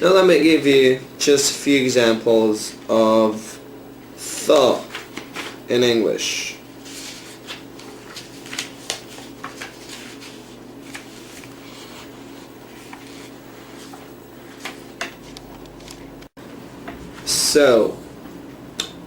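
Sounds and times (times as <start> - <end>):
low room tone hum: 0.0 - 19.0.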